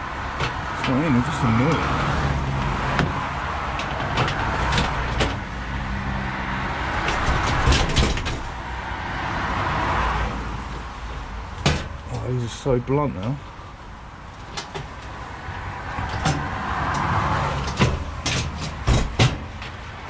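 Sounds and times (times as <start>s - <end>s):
road traffic passing: 0.0s - 20.0s
hand tools clanking on scrap metal: 2.9s - 5.5s, 16.0s - 19.8s.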